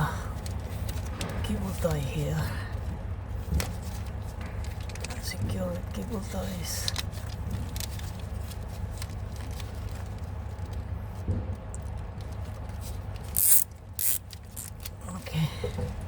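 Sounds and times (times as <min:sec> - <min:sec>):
steady low hum: 0:00.0 - 0:16.0
cable tie zipping: 0:13.3 - 0:14.9.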